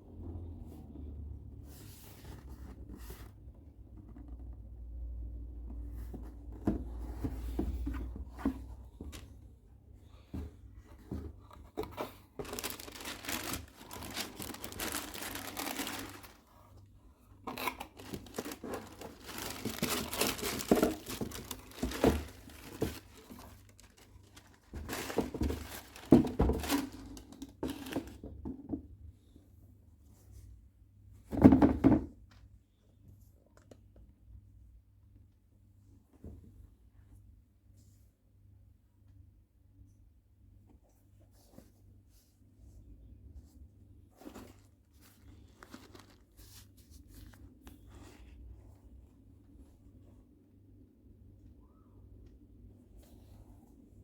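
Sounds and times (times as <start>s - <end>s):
paper crinkling and tearing: 12.4s - 16.4s, 17.5s - 27.2s.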